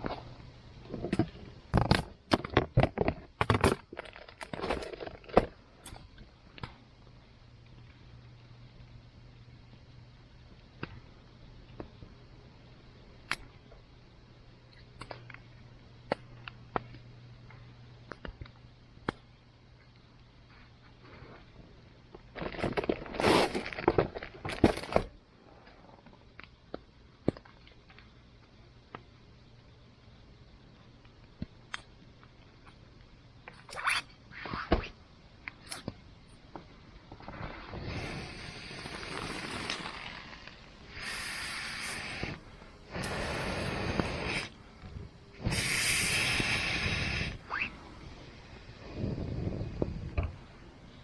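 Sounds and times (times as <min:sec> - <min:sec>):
crunching and rustling: 0:00.9 - 0:06.7, 0:21.0 - 0:26.2
burning wood crackling: 0:36.4 - 0:50.1
breathy blowing on fire: 0:37.2 - 0:50.2.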